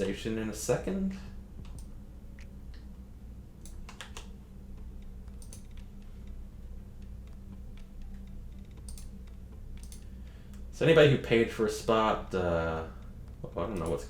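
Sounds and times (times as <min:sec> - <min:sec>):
low electrical hum: 0:00.0 - 0:14.0
computer keyboard keystrokes: 0:03.6 - 0:04.4, 0:05.0 - 0:06.4, 0:07.0 - 0:10.6, 0:13.2 - 0:14.0.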